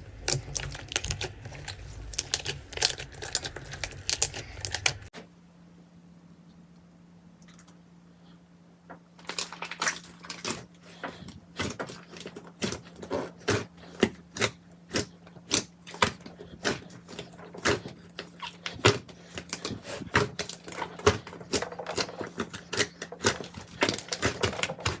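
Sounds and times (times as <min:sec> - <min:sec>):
slime crackling and popping: 0:00.0 - 0:05.1, 0:15.5 - 0:25.0.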